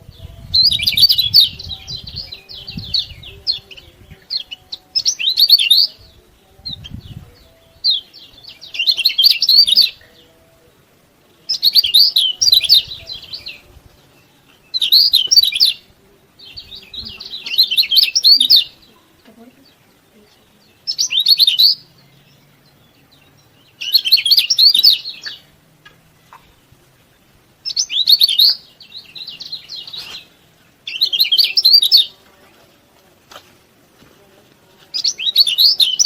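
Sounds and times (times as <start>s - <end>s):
bird chirping rapidly: 14.7s - 15.8s, 16.6s - 18.9s, 20.8s - 21.9s, 23.4s - 25.5s.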